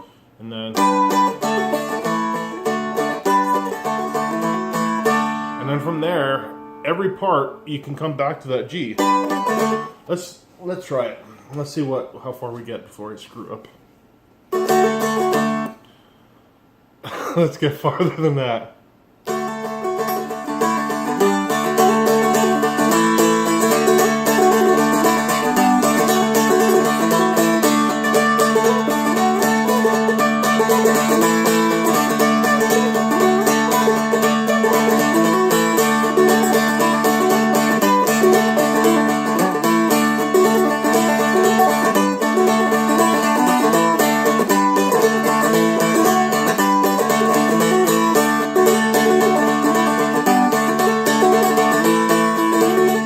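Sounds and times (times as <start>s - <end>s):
dulcimer playing a fast jig: 0.8s - 6.2s, 8.9s - 10.0s, 19.3s - 53.0s.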